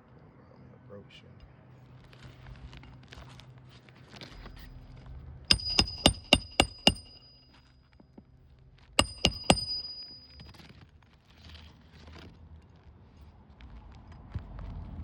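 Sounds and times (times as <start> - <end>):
hammer striking nails: 5.5 - 7.4, 9.0 - 10.5.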